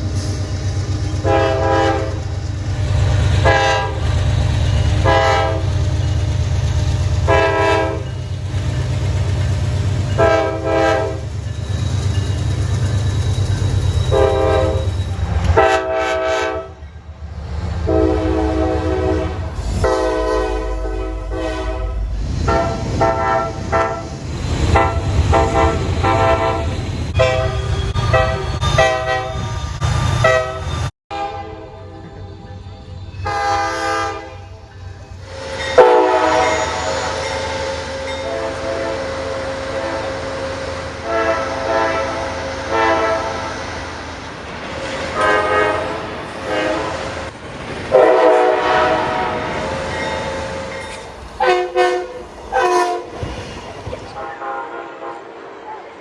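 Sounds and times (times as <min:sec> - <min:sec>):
passing train rumble: 0:00.0 - 0:56.0
multi-note train horn blasts: 0:01.2 - 0:02.4, 0:03.0 - 0:05.9, 0:07.2 - 0:08.1, 0:10.1 - 0:11.3, 0:14.1 - 0:14.9, 0:15.5 - 0:16.8, 0:17.8 - 0:24.1, 0:24.7 - 0:43.7, 0:45.1 - 0:47.2, 0:47.9 - 0:49.7, 0:51.4 - 0:53.3, 0:54.2 - 0:55.8.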